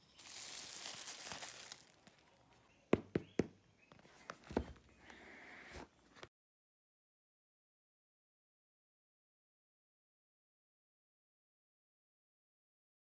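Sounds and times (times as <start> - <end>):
plastic wrapping crinkling: 0.0 - 2.6
taps and knocks on box: 2.9 - 3.6.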